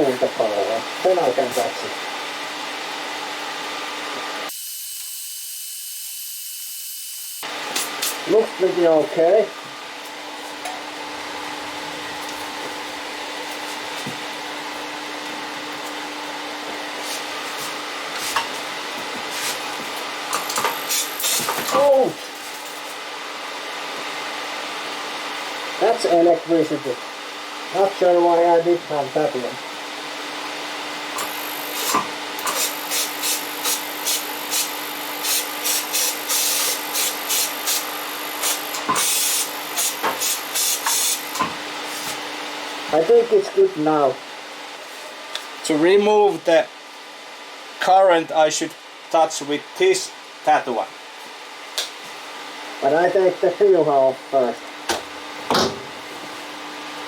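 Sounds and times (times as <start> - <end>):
steady hum: 25.8 - 57.0.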